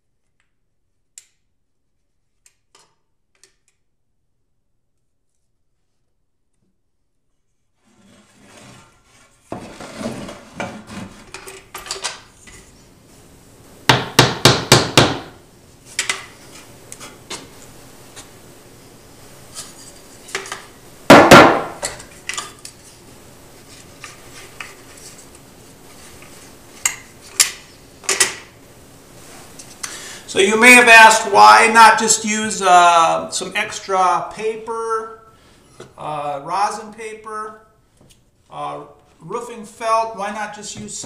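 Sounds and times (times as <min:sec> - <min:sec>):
wooden shims knocked into place: 0:21.1 - 0:22.0.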